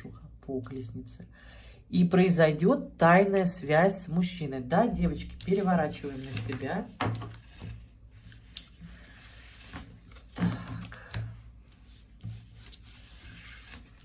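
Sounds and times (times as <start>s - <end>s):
cards clicking and rustling: 5.4s - 14.0s.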